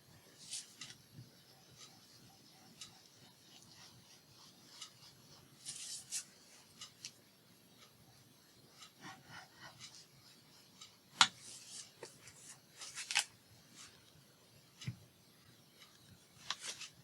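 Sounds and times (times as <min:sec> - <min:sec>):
paper rustling: 0:11.5 - 0:13.9, 0:16.4 - 0:17.0.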